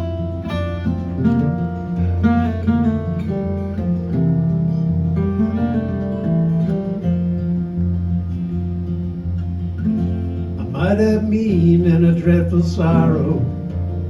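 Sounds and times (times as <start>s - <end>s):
acoustic guitar playing: 0.0s - 14.0s
steady bass line: 0.0s - 14.0s.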